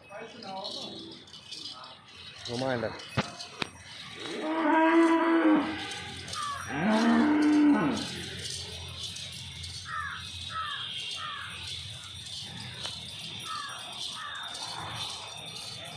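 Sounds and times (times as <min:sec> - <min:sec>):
cow mooing: 0:04.2 - 0:08.6.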